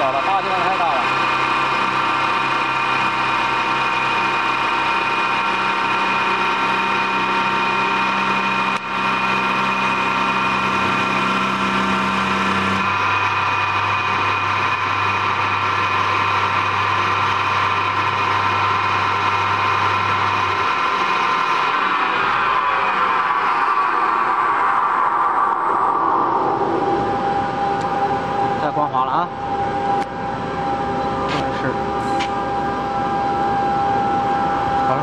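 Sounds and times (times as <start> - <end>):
wood lathe whining: 0.0 - 27.9
low hum: 0.0 - 35.0.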